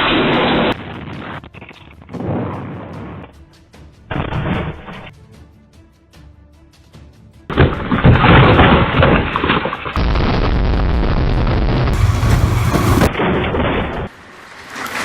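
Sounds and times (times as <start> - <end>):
loud booming rumbling noise: 10.0 - 13.3.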